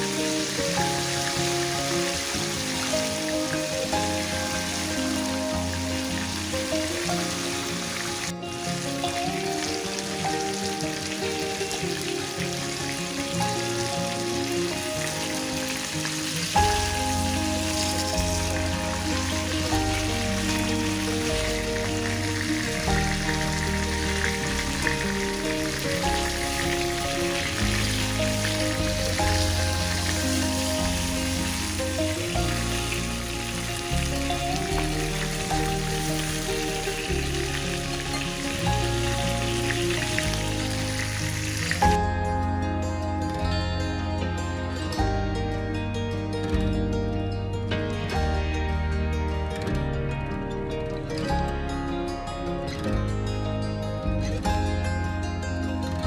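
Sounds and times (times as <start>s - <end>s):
chicken sizzling in a frying pan: 0.0s - 42.0s
background music: 0.0s - 56.0s.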